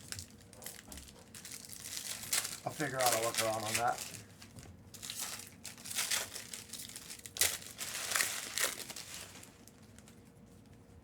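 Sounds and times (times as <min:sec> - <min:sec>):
plastic wrapping crinkling and tearing: 0:00.0 - 0:10.2.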